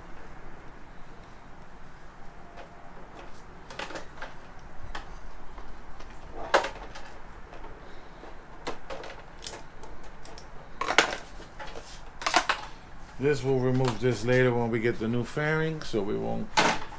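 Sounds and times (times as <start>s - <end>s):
clicks and knocks of plastic parts: 2.4s - 12.8s, 13.5s - 14.6s, 15.7s - 16.9s.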